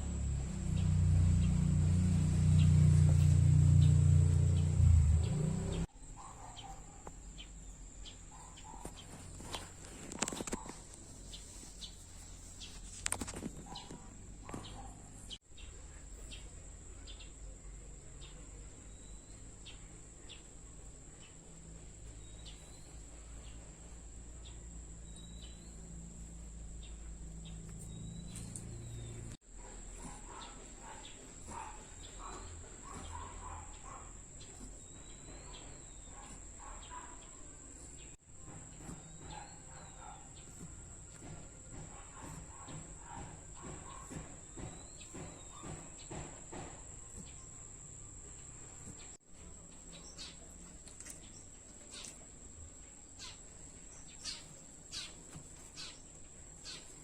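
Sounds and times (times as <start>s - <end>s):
loud low rumble: 0.0s - 5.9s.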